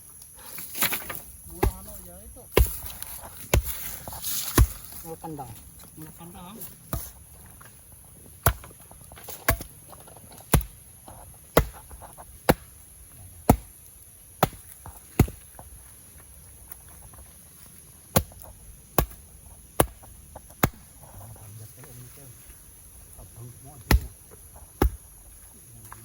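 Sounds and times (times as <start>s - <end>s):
wood being chopped: 0.7s - 5.9s, 6.8s - 15.8s, 18.0s - 21.0s, 23.8s - 26.0s.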